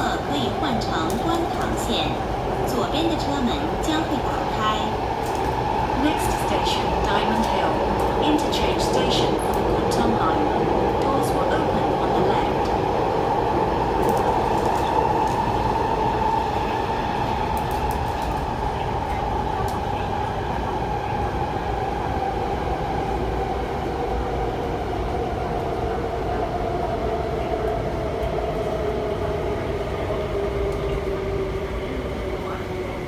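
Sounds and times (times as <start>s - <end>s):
electric train rail rumble: 0.0s - 33.0s.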